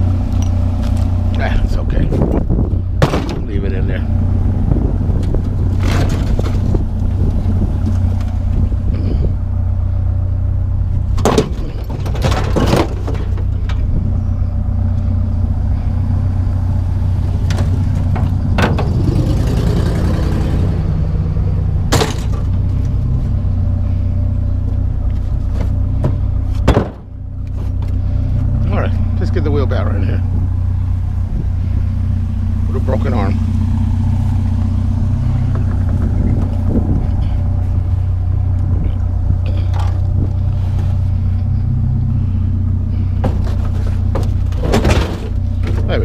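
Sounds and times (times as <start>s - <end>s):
truck engine humming: 0.0s - 46.0s
sharp knocks and clatters: 3.0s - 3.6s, 5.2s - 6.9s, 11.2s - 13.8s, 17.4s - 19.2s, 21.9s - 22.9s, 25.5s - 27.9s, 43.2s - 45.9s.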